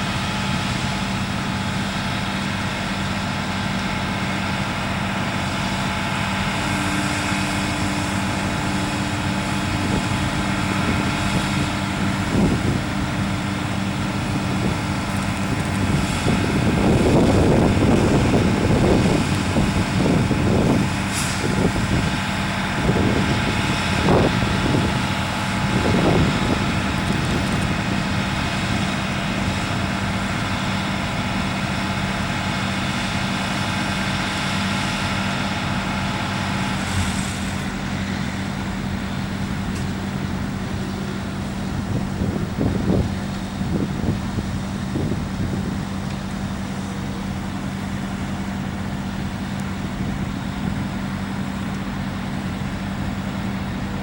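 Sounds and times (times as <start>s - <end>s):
diesel truck engine humming: 0.0s - 54.0s
brief hiss: 21.1s - 21.6s, 36.7s - 37.7s.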